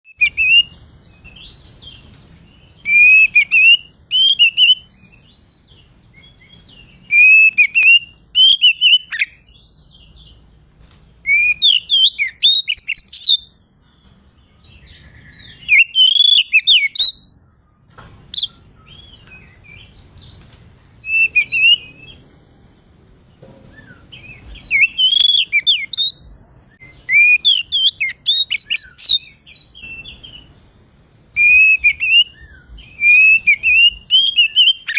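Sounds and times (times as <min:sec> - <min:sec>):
bird singing whistled phrases: 0:00.0 - 0:02.0, 0:02.7 - 0:05.5, 0:06.2 - 0:10.1, 0:11.2 - 0:13.5, 0:14.6 - 0:17.3, 0:21.0 - 0:22.2, 0:23.7 - 0:30.5, 0:31.4 - 0:34.9.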